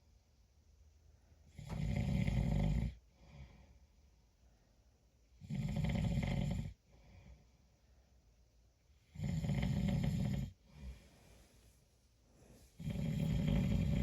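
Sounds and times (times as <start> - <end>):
faint breathing: 3.0 - 5.0, 6.8 - 8.4, 10.6 - 14.0
person snoring: 9.1 - 10.6, 12.8 - 14.0.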